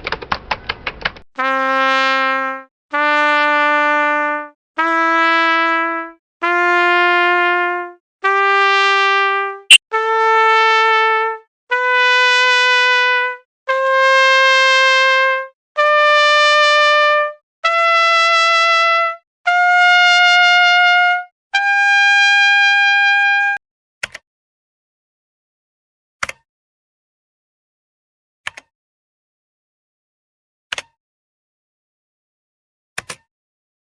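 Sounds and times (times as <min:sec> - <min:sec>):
keyboard trumpet notes climbing scale: 0:01.4 - 0:23.6.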